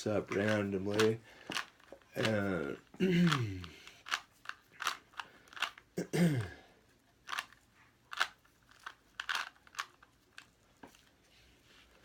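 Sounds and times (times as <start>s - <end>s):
puzzle cube layers clicking: 0.3s - 5.8s, 7.2s - 10.4s.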